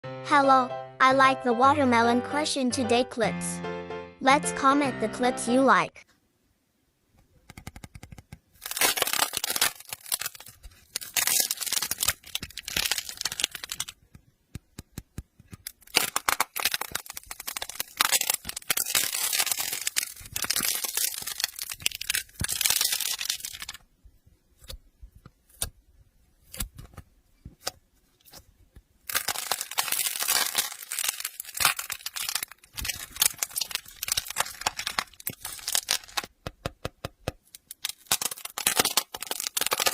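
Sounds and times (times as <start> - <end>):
slime crackling and popping: 7.8 - 23.8, 29.0 - 36.4, 37.3 - 39.9.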